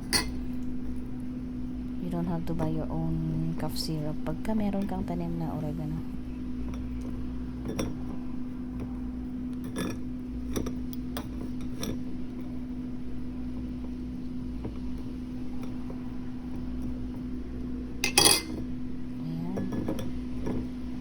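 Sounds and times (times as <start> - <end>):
metal spoon clinking: 0.0 - 0.4, 18.0 - 18.7
steady low hum: 0.0 - 21.0.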